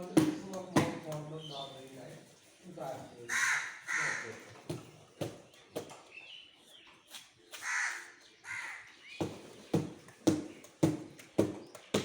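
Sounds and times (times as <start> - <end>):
knife chopping meat: 0.0 - 1.3
crows cawing: 3.3 - 4.6, 7.6 - 8.9.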